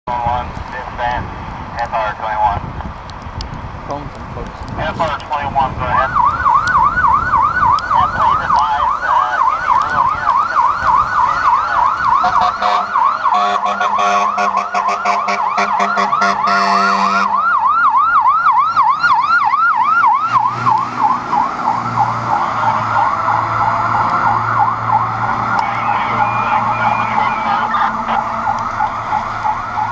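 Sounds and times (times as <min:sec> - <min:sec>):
electronic siren yelping: 0:05.9 - 0:29.9
air horn blasts: 0:12.2 - 0:17.3.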